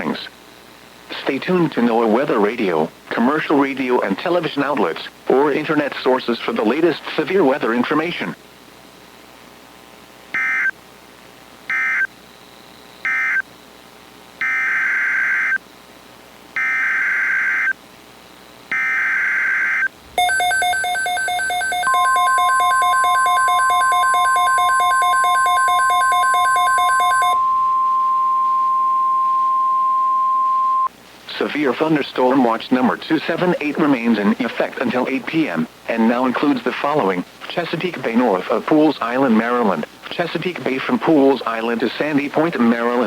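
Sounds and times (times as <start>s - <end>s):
steady warning tone: 18.7s - 30.9s.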